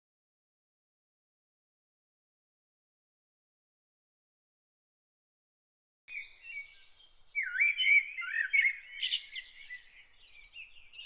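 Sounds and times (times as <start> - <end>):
songbird chirping: 6.1 - 11.0.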